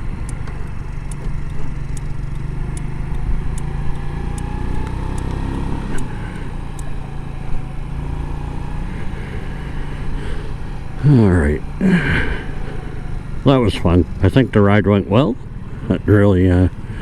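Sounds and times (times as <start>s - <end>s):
light ticking: 0.0s - 17.0s
scooter engine running: 0.0s - 17.0s
faint whine: 5.8s - 17.0s.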